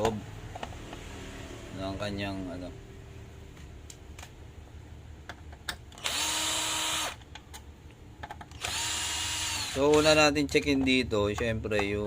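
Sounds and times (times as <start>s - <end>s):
electric screwdriver running: 6.0s - 7.2s, 8.5s - 10.2s.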